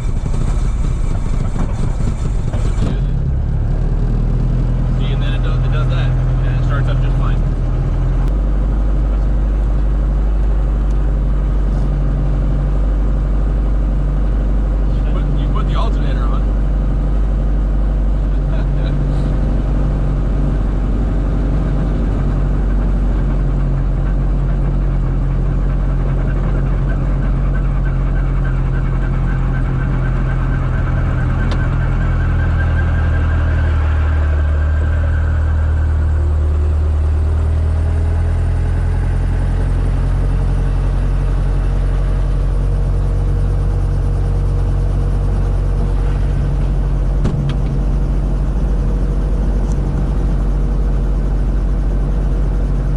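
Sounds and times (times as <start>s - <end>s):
helicopter piston engine running: 0.0s - 52.9s
higher tone rising: 26.6s - 52.9s.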